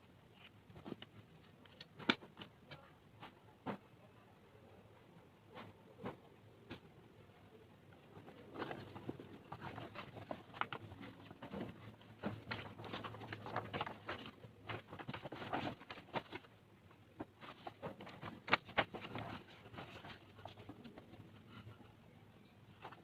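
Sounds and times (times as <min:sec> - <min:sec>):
packaging rustling and tapping: 0:08.2 - 0:21.2.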